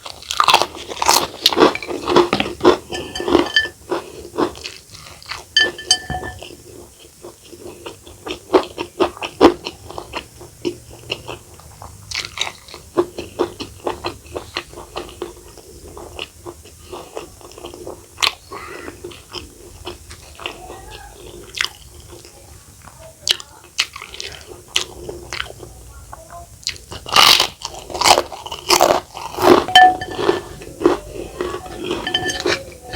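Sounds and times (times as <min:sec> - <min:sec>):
person chewing crunchy food: 0:00.0 - 0:05.8, 0:06.4 - 0:20.6, 0:26.6 - 0:32.9.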